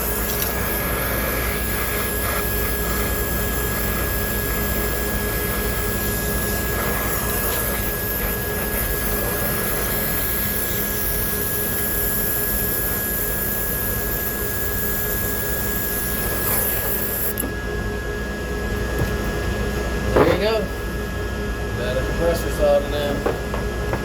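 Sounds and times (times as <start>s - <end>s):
torch flame hissing: 0.0s - 17.5s.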